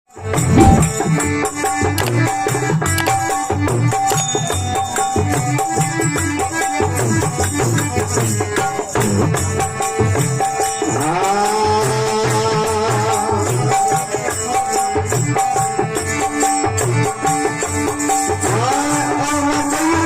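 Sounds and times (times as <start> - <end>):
drum beat: 0.4 - 1.2, 2.0 - 2.3, 3.0 - 3.4
repeated melodic note: 0.5 - 1.1, 2.0 - 2.2, 3.0 - 3.4, 4.1 - 5.6
jingling rattle percussion: 2.0 - 2.4, 3.0 - 19.0.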